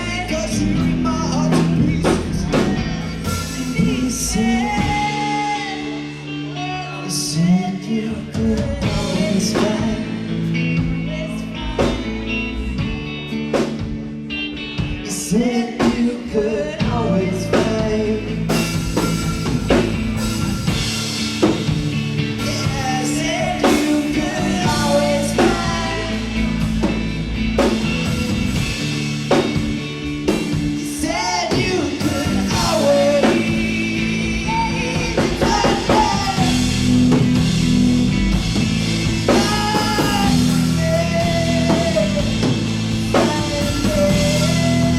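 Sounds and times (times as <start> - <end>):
person singing: 0.0 - 13.0, 15.0 - 19.8, 22.2 - 27.0, 30.3 - 37.4, 39.2 - 44.9
bass guitar: 0.0 - 44.9
drum kit: 0.0 - 44.9
electric guitar: 0.0 - 44.9.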